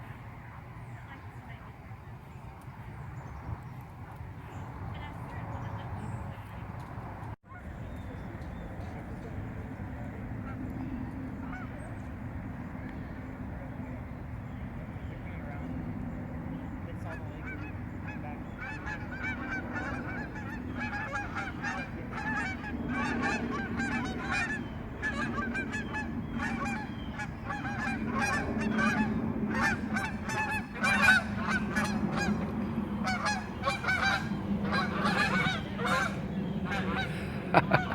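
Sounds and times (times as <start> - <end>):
flock of birds calling: 17.1 - 37.9.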